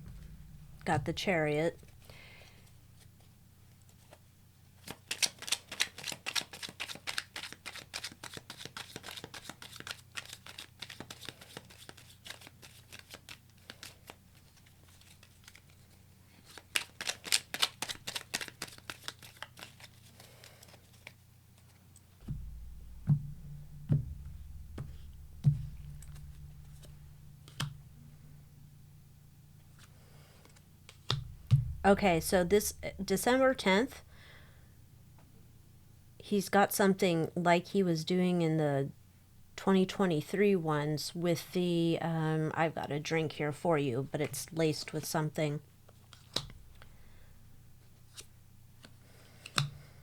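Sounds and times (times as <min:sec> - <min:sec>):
thumps: 0:00.0 - 0:02.2, 0:22.2 - 0:30.0, 0:30.9 - 0:34.3
low hum: 0:00.0 - 0:03.0, 0:22.2 - 0:36.2
cards being shuffled: 0:04.8 - 0:21.8, 0:45.9 - 0:46.6, 0:48.0 - 0:49.8.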